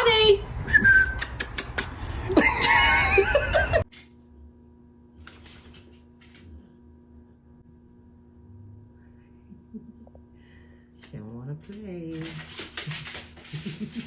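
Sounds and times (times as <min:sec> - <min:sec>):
faint steady hum: 0:02.3 - 0:12.4.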